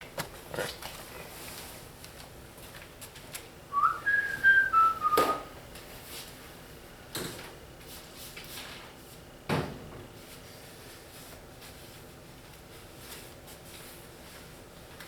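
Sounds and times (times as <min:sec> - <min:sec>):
person whistling: 0:03.7 - 0:05.6.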